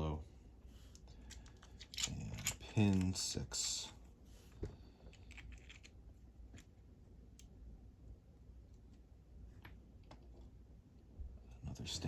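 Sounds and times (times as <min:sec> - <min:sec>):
faint clicks of lock pins: 0:00.9 - 0:03.2.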